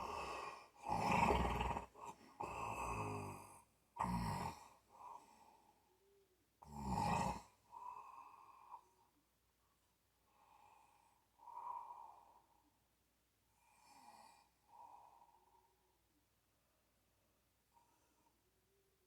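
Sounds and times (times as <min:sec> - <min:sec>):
rough rattling snoring: 0:00.0 - 0:03.4.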